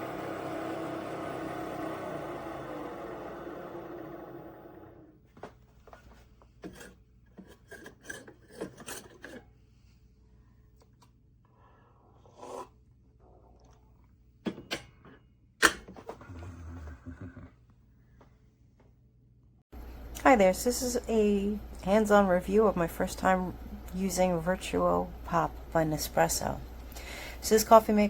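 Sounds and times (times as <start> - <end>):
steady whirring: 0.0 - 5.1.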